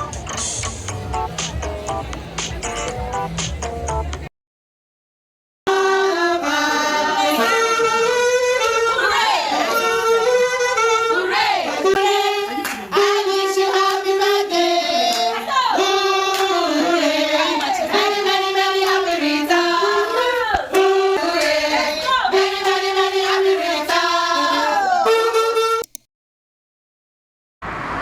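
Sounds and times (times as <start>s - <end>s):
children singing together: 5.7s - 25.2s.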